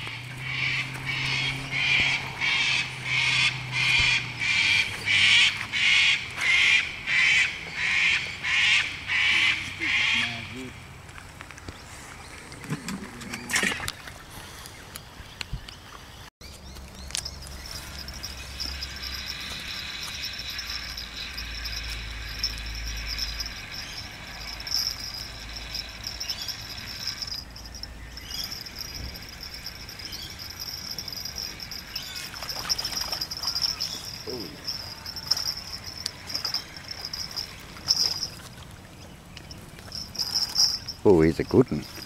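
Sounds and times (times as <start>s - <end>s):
insects chirring: 16.8s - 42.0s.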